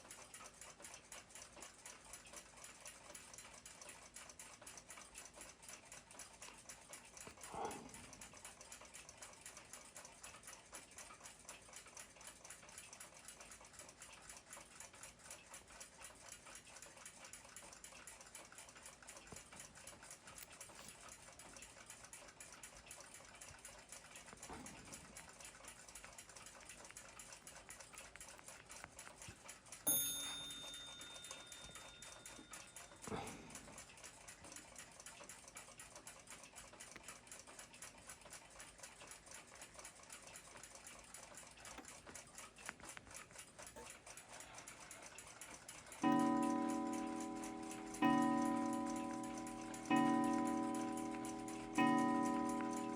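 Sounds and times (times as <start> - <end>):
clock ticking: 0.0 - 52.9
sharp metallic ring: 29.9 - 32.2.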